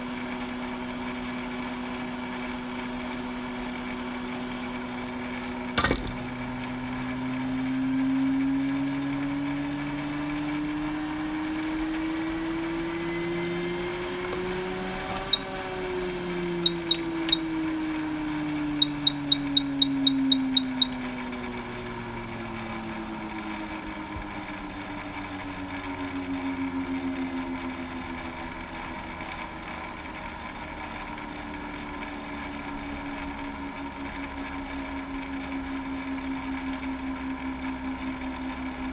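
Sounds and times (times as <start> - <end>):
small electric motor humming: 4.7 - 24.0
click: 14.2 - 15.6, 16.6 - 17.6, 18.8 - 21.5
short high electronic beeps: 16.6 - 17.5, 18.8 - 21.1.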